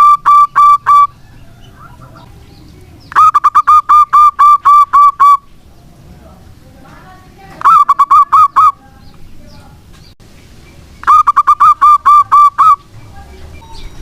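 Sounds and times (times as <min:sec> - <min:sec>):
dove cooing: 0:00.0 - 0:02.4, 0:07.6 - 0:08.8, 0:11.0 - 0:12.9.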